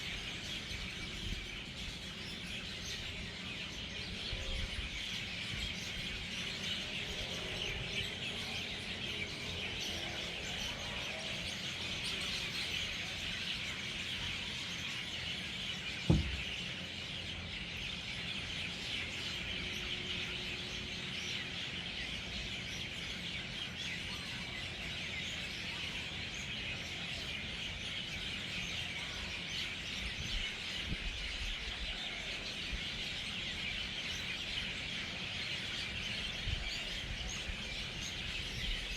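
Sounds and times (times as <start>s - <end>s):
flock of birds chirping: 0.0s - 38.9s
sharp thump: 16.1s - 16.5s.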